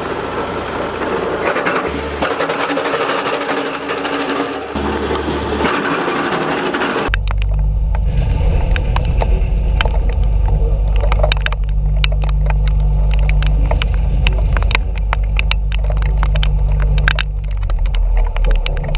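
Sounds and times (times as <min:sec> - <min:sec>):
wood chipper engine drone: 0:00.0 - 0:18.9
branches cracking and snapping: 0:08.7 - 0:18.9.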